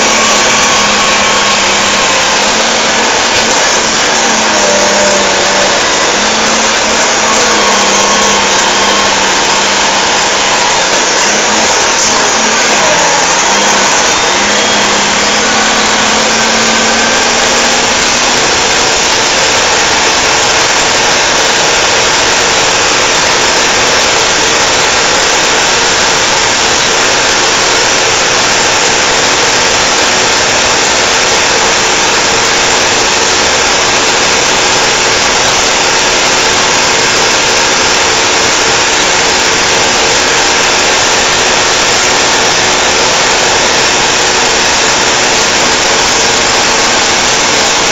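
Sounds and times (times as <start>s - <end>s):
road noise: 0.0s - 47.9s
truck diesel engine running: 0.0s - 47.9s.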